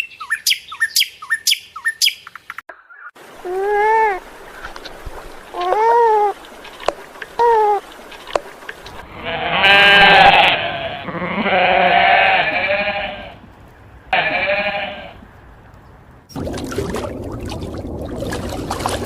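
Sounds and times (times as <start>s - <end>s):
running water: 3.2s - 10.9s, 16.3s - 19.0s
farm animal bleating: 9.0s - 13.4s, 14.1s - 15.2s.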